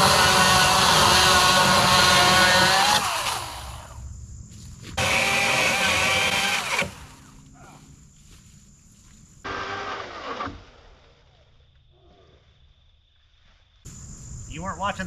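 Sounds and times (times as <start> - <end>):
cordless power saw running: 0.0 - 4.0, 5.0 - 7.2.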